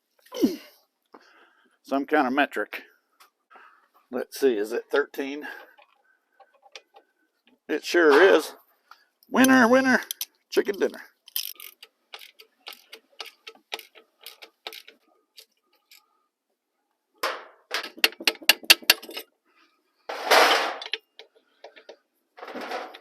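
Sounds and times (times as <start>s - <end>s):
ratchet wrench clicking: 11.3s - 16.0s.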